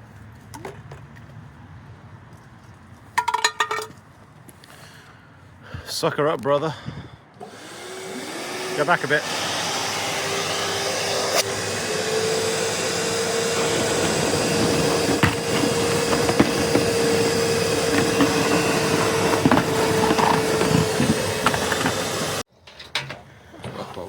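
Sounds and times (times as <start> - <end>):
gutter vacuum humming: 7.4 - 22.5
water and debris knocking in hose: 13.4 - 22.1.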